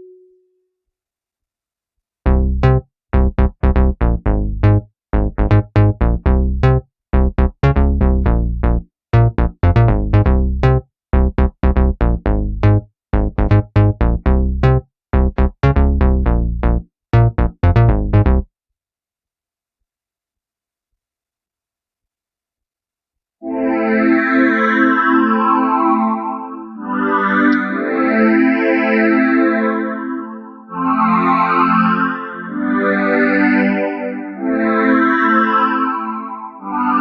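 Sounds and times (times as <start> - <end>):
synthesizer staccato sequence: 2.3 - 18.5.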